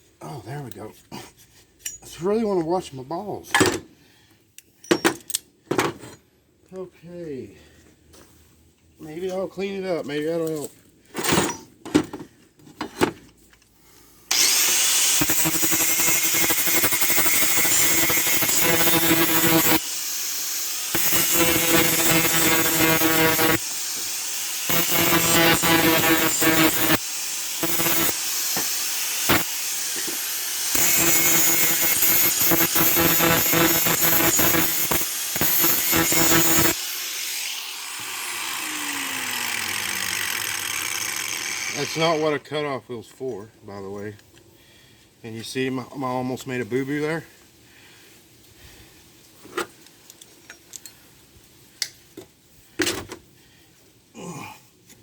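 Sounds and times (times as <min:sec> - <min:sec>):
angle grinder grinding metal: 0:14.3 - 0:42.4.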